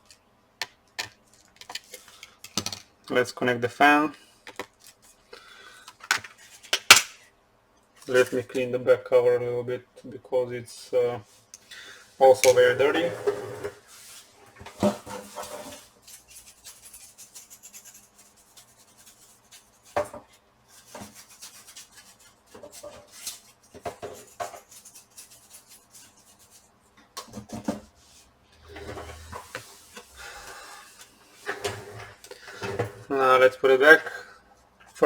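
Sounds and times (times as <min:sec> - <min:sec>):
rubbing on plastic: 0:12.9 - 0:26.9.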